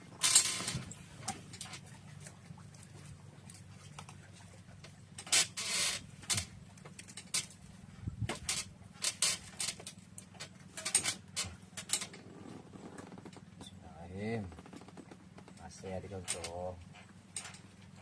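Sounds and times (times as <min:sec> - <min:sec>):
rustle: 0:00.0 - 0:13.7.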